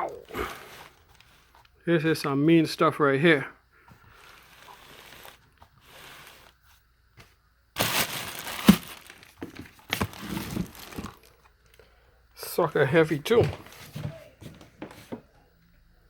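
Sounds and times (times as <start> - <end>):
packaging crinkling: 4.0 - 6.6, 7.8 - 11.4.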